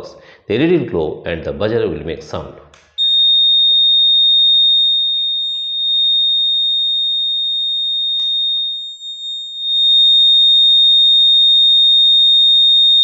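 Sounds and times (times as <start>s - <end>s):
high-pitched alarm buzzer: 3.0s - 13.0s.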